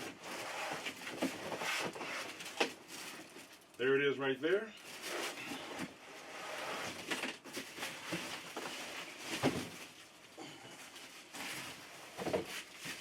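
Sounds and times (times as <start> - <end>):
cardboard box rustling and scraping: 0.0 - 3.2, 5.0 - 10.0.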